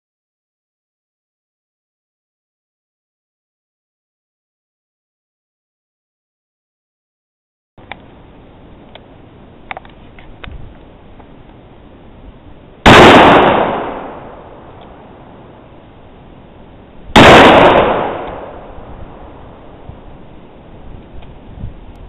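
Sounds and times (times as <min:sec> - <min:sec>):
loud gunshots: 0:12.8 - 0:14.5, 0:17.2 - 0:18.8.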